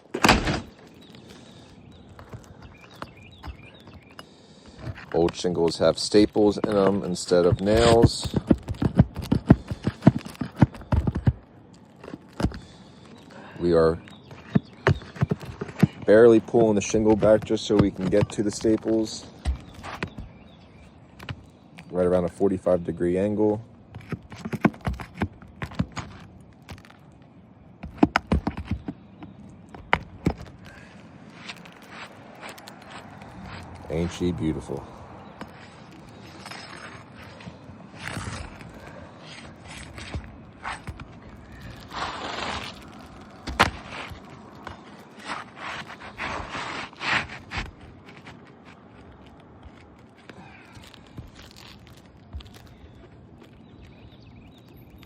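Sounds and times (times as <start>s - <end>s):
scraping on roof shingles: 0.0s - 54.8s
metal tool scraping shingles: 38.0s - 48.6s.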